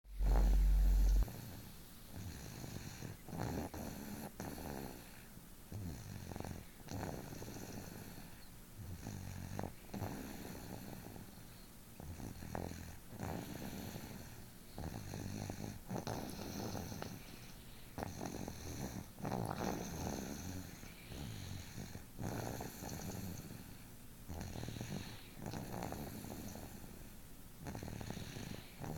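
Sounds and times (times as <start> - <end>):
person snoring: 0.2 - 1.6.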